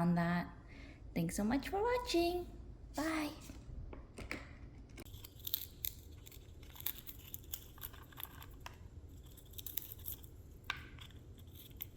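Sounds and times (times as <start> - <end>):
parrot tearing cardboard: 5.0 - 11.9.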